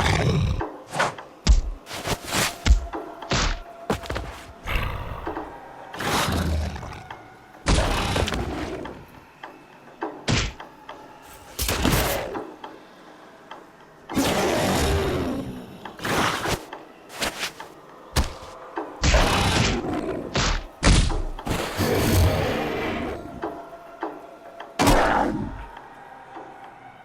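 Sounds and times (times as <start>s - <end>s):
crashing scraping noises: 1.8s - 4.6s, 16.0s - 18.6s.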